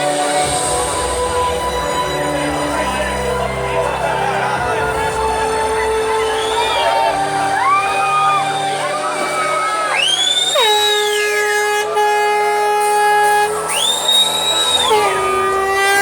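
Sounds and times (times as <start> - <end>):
horn-like tones sweeping in pitch: 5.7 - 16.0.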